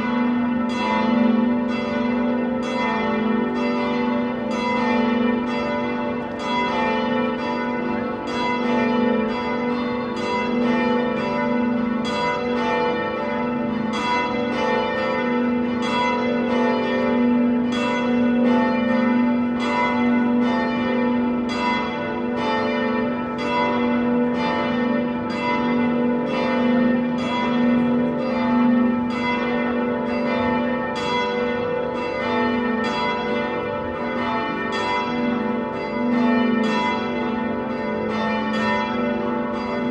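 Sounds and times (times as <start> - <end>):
church bells pealing: 0.0 - 39.9.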